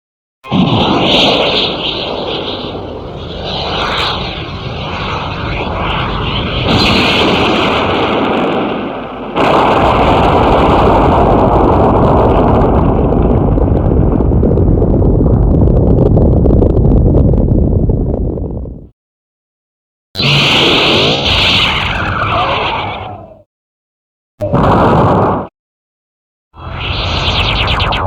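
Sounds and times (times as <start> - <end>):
jet rumble with steady whine: 0.5 - 18.9.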